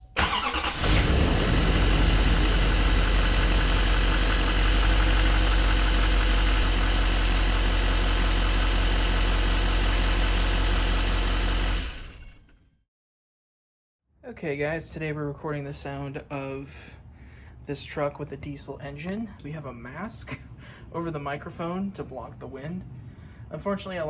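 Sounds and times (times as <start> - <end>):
diesel truck engine idling: 0.2 - 10.6.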